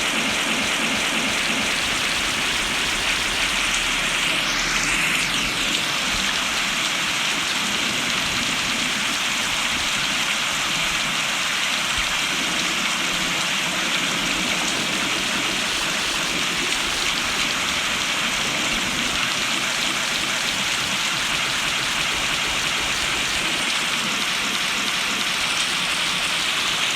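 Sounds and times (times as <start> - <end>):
steady rain falling: 0.0 - 26.9.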